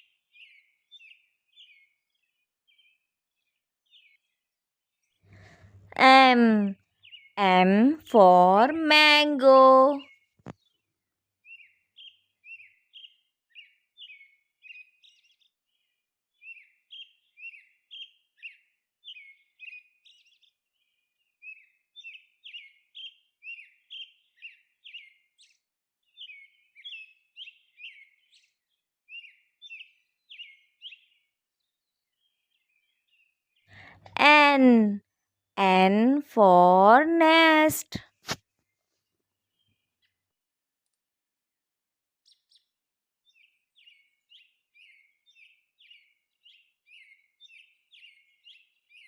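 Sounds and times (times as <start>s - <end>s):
small bird chirping: 29.2s - 34.2s.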